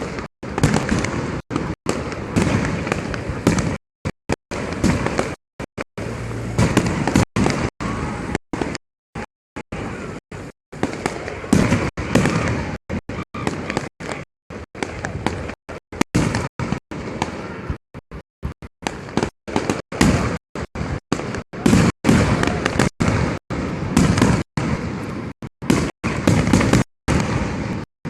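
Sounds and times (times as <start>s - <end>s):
gunpowder bangs: 0.0s - 5.4s.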